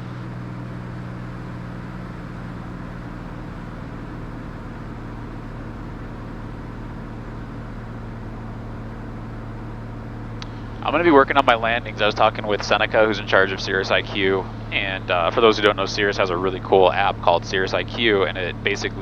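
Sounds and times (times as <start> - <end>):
aircraft engine and propeller drone: 0.0 - 19.0.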